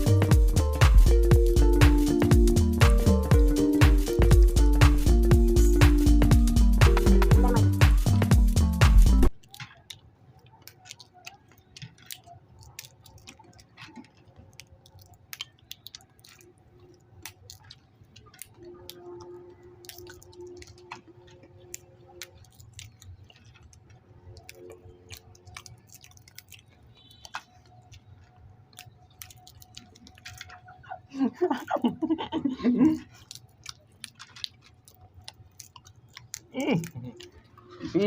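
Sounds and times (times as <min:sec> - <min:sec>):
faint chewing: 0:09.2 - 0:38.0
peanut shells cracking: 0:09.3 - 0:38.0.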